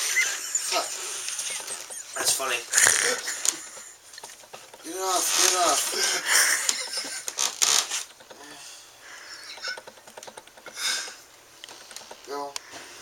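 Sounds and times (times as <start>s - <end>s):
rustling and scuffling: 0.7s - 8.4s
small clicks and scrapes: 1.2s - 8.4s, 9.2s - 12.8s.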